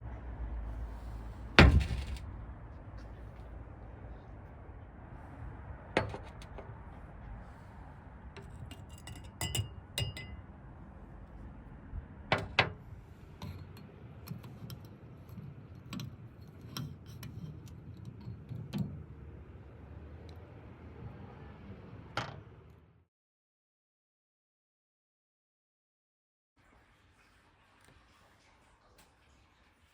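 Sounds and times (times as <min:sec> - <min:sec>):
glass and utensils clinking: 0:08.4 - 0:10.4.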